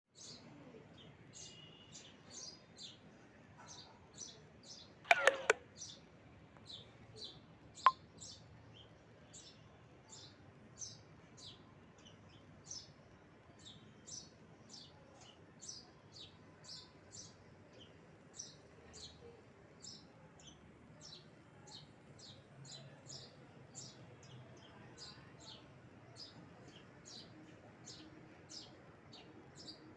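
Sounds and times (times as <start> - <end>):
bird chirping: 5.1 - 5.6
sharp click: 5.1 - 5.6.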